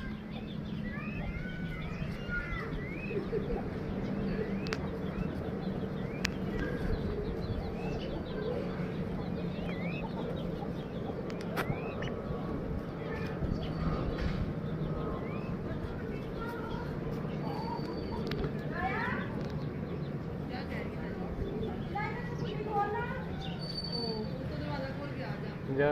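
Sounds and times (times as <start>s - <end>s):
steady low hum: 0.0s - 17.7s
birds chirping: 0.0s - 25.9s.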